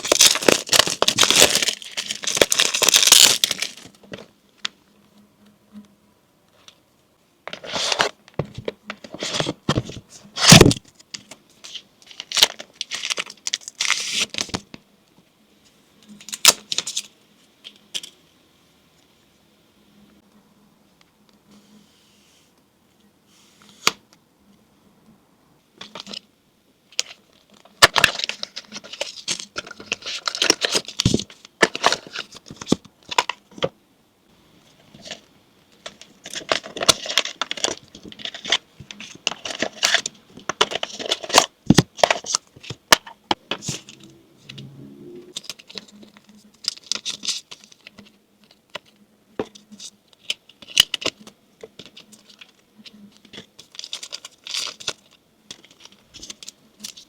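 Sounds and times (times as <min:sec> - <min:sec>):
packaging rustling and tearing: 0:00.0 - 0:04.3, 0:08.9 - 0:14.6, 0:27.0 - 0:33.4, 0:35.8 - 0:42.8, 0:53.3 - 0:57.0.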